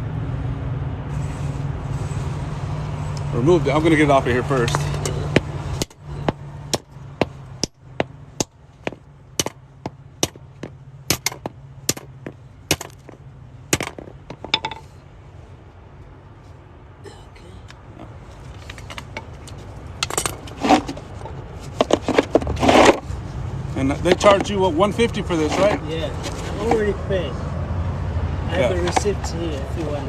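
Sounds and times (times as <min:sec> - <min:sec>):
metal lug nut clinking: 0:10.2 - 0:13.2, 0:13.8 - 0:15.0, 0:20.0 - 0:22.0.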